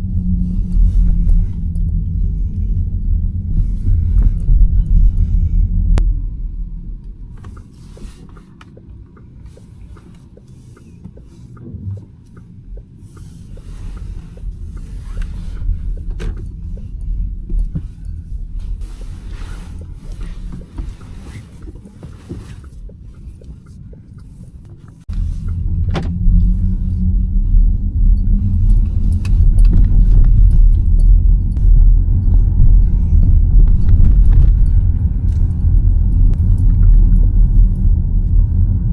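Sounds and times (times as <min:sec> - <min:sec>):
road and tyre rumble: 0:00.0 - 0:38.9.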